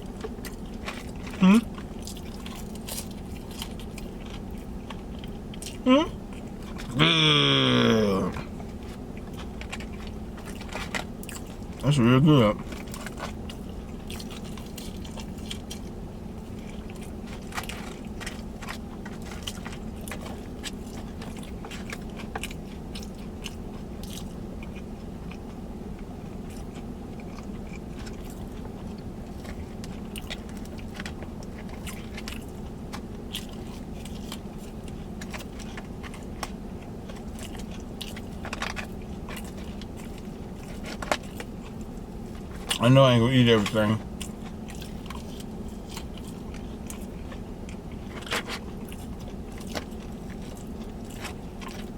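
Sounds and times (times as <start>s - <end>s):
chewing and crunching food: 0.0s - 51.9s
steady low hum: 0.0s - 51.9s.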